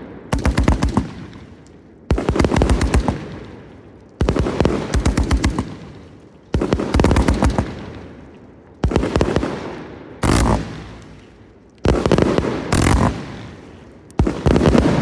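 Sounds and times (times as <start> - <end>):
firework crackling bangs: 10.2 - 15.0
echoing rumble: 14.2 - 15.0.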